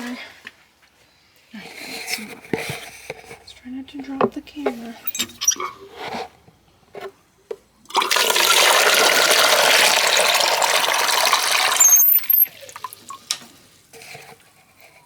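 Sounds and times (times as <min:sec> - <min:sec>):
water running into container: 0:07.9 - 0:13.4.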